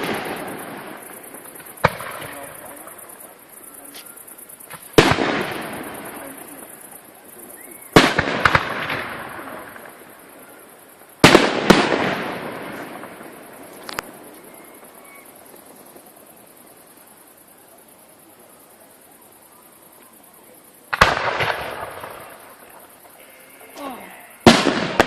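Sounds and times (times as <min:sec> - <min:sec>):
small firework crack: 0:00.0 - 0:14.5, 0:20.9 - 0:25.0
firework shells bursting: 0:07.6 - 0:10.1, 0:20.9 - 0:23.2, 0:24.4 - 0:25.0.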